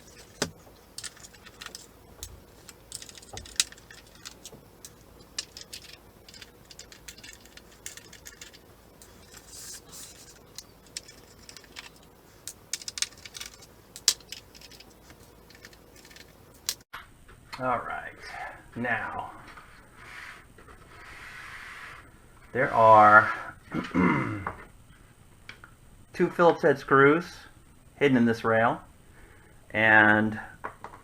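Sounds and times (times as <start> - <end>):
screwdriver and screws clicking: 0.0 - 16.8.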